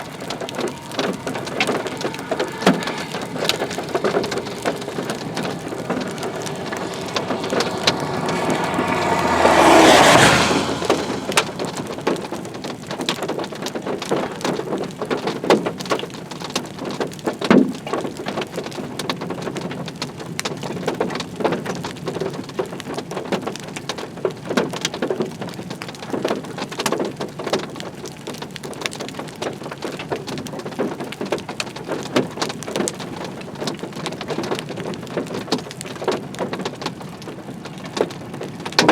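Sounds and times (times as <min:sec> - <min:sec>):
loud noise with rising tone: 0:00.0 - 0:12.9
rain drops spattering on surface: 0:00.0 - 0:38.9
steady rain: 0:00.0 - 0:38.9.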